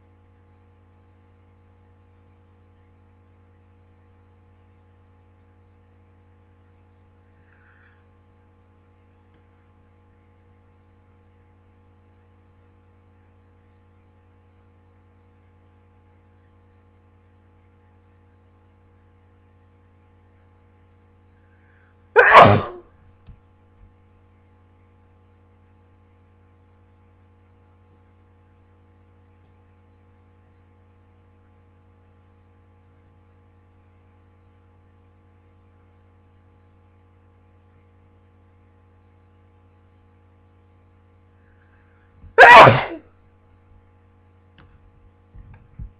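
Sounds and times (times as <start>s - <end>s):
faint electrical hum: 0.0s - 45.9s
person sneezing: 22.2s - 22.8s, 42.3s - 43.0s.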